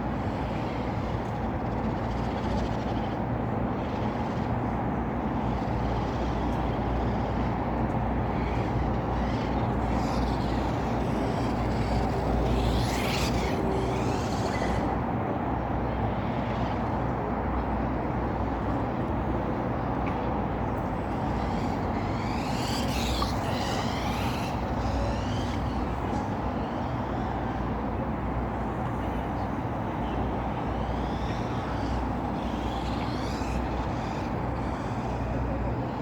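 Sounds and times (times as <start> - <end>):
toy car electric motors whining: 5.7 - 15.0, 20.8 - 36.0.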